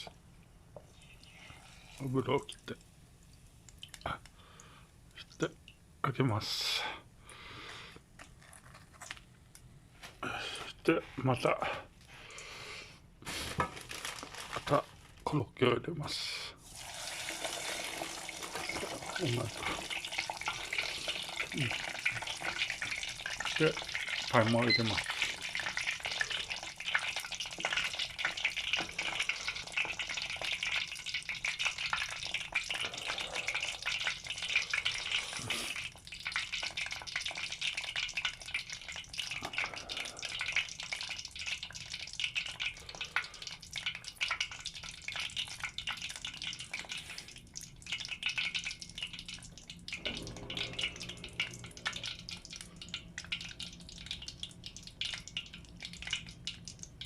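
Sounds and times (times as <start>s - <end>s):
food sizzling in hot oil: 16.6s - 57.0s
low hum: 48.8s - 57.0s.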